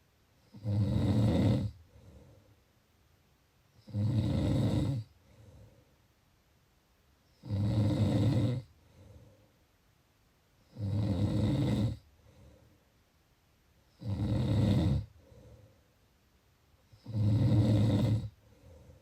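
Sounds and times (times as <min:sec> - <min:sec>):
person snoring: 0:00.5 - 0:01.8, 0:03.8 - 0:05.1, 0:07.4 - 0:08.7, 0:10.7 - 0:12.0, 0:14.0 - 0:15.1, 0:17.0 - 0:18.4
soft breath: 0:01.8 - 0:02.8, 0:05.1 - 0:06.2, 0:08.7 - 0:09.8, 0:12.0 - 0:13.0, 0:15.0 - 0:16.1, 0:18.3 - 0:19.0.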